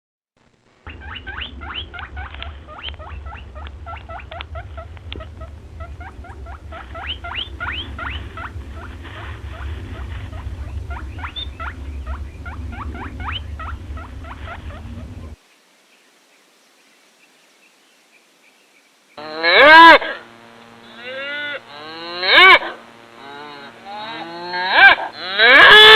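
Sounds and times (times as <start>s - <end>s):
steady low rumble: 0.4s - 15.4s, 20.2s - 25.3s
young farm animals peeping: 0.9s - 15.4s, 20.7s - 25.9s.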